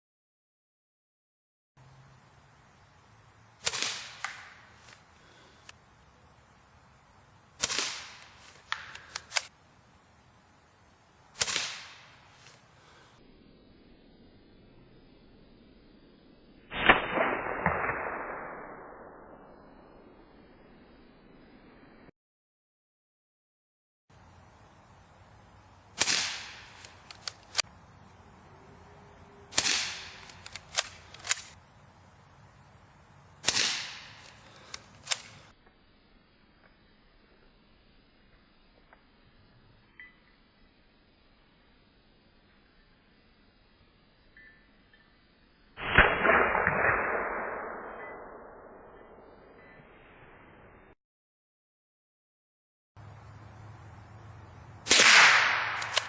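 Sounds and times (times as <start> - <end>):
rifle shots: 3.6 - 4.6, 7.6 - 9.5, 11.4 - 12.2, 16.7 - 18.7, 26.0 - 27.6, 29.5 - 31.6, 33.4 - 35.4, 45.8 - 48.3, 54.8 - 56.0.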